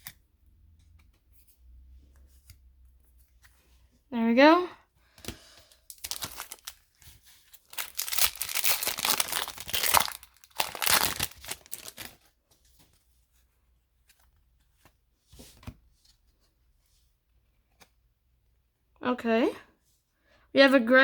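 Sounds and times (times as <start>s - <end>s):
wrapper tearing and crinkling: 5.9s - 12.3s.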